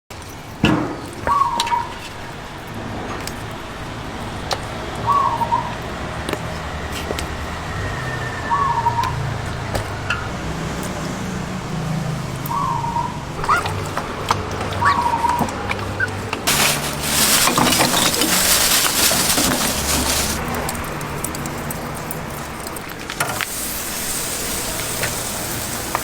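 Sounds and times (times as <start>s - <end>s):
steady background noise: 13.1s - 23.7s.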